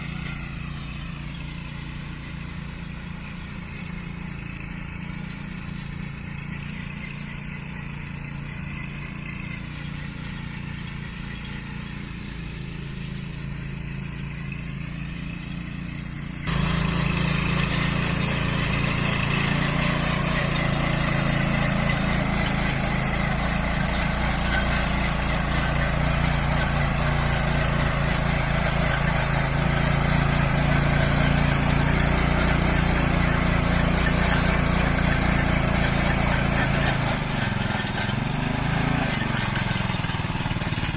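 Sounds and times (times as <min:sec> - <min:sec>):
cultivator engine running: 0:00.0 - 0:40.9.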